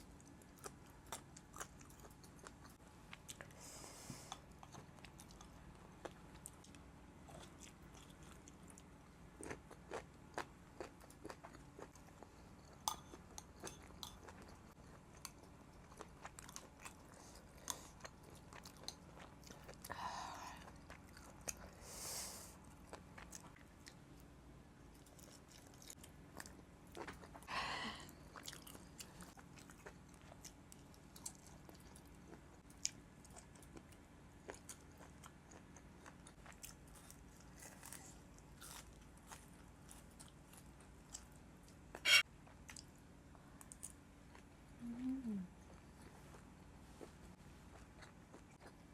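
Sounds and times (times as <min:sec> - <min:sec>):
person chewing: 0:00.2 - 0:03.6, 0:04.3 - 0:19.9, 0:22.6 - 0:24.3, 0:28.3 - 0:42.9, 0:45.6 - 0:48.9.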